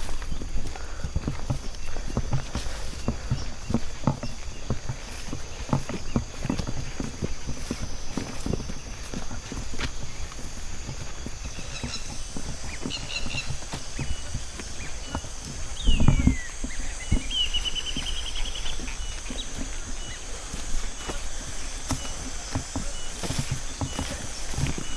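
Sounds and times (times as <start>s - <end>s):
birds calling: 0.0s - 24.9s
footsteps on dirt trail: 0.0s - 24.9s
high insect hiss: 0.0s - 24.9s.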